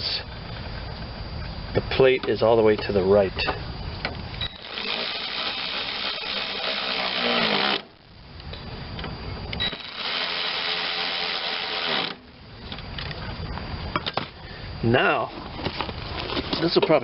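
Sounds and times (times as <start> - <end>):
power driver driving bolts: 4.5 - 8.0.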